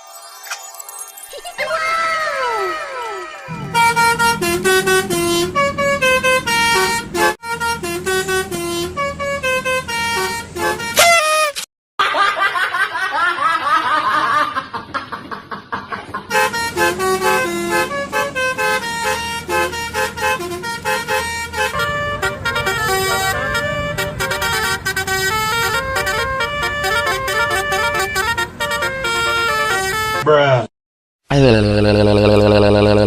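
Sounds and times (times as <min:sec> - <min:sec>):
multi-tone horn playing a tune: 0:03.5 - 0:11.6, 0:16.3 - 0:30.2.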